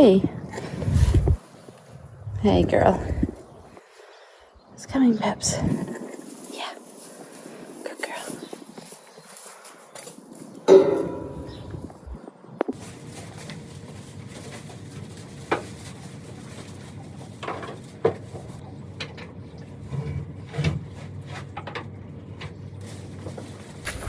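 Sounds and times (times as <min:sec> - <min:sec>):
rustling: 0:05.7 - 0:12.1, 0:12.8 - 0:18.6, 0:19.7 - 0:24.0.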